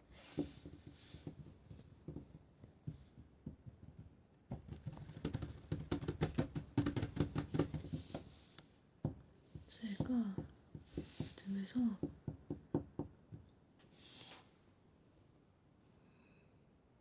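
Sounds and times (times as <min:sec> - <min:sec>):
rapid tapping and clicking: 0:00.4 - 0:08.2.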